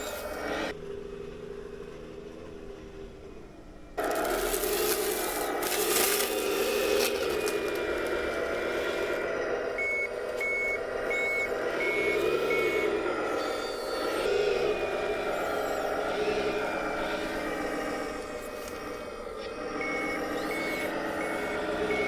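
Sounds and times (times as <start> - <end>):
simulated diesel engine: 0.0 - 22.0
short reversing beeps: 9.8 - 14.2.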